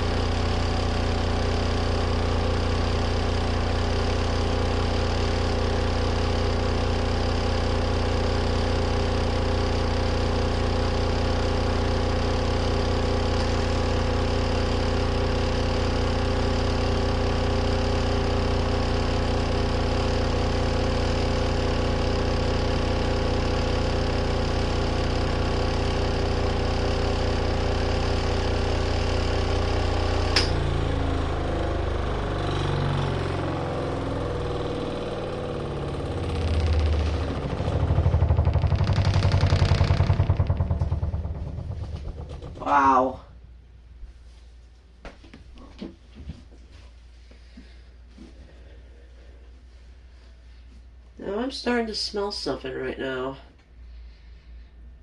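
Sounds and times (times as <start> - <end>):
washing machine spin motor humming: 0.0 - 55.0
sharp click: 30.4 - 30.6
drum rumbling unevenly: 37.2 - 43.1.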